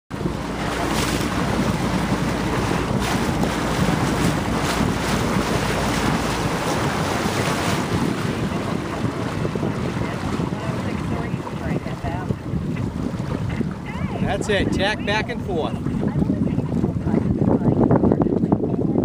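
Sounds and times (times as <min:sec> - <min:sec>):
water lapping: 0:00.1 - 0:19.0
wind buffeting microphone: 0:00.1 - 0:19.0.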